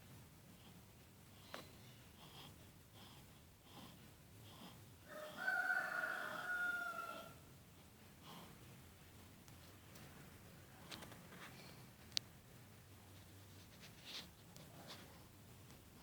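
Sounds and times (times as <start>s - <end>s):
baby snoring breaths: 2.2s - 4.9s, 8.2s - 8.6s.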